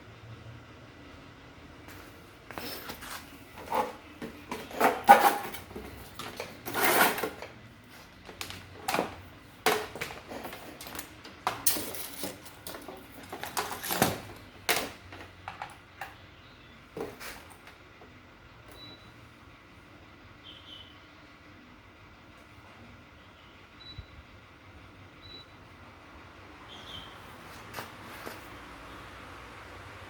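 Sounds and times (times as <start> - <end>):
fan parts clicking and scraping: 1.8 - 16.3, 27.2 - 28.7.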